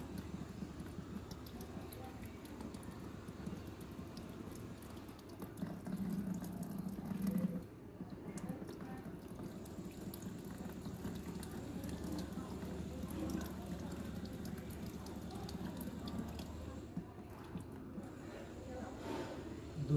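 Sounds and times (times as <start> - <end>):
water running and dripping from nose: 0.0 - 7.6, 8.3 - 17.0.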